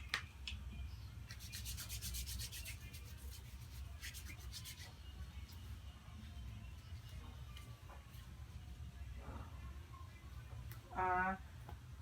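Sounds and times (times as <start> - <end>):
hands rubbing together: 1.3 - 5.0.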